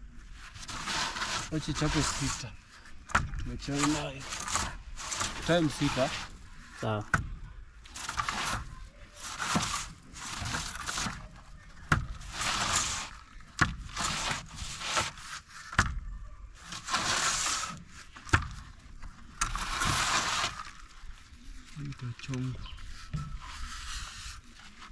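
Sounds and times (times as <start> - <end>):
trowel scraping plaster: 0.4 - 7.0, 7.9 - 16.0, 16.6 - 18.6, 19.3 - 21.2.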